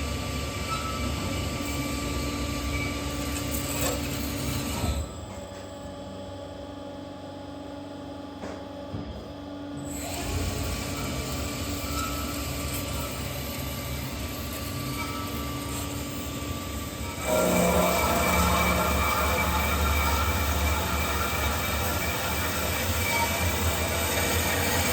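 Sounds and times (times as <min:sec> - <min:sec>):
broad grinding noise: 0:12.0 - 0:24.9
band saw humming: 0:15.1 - 0:24.9.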